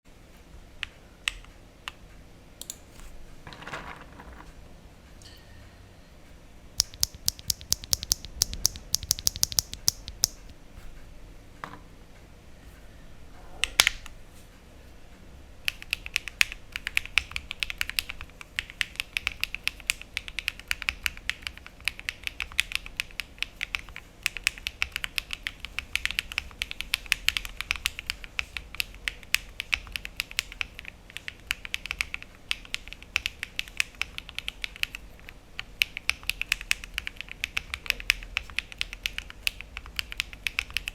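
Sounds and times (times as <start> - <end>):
mechanical keyboard typing: 6.8 - 10.5, 15.6 - 40.9.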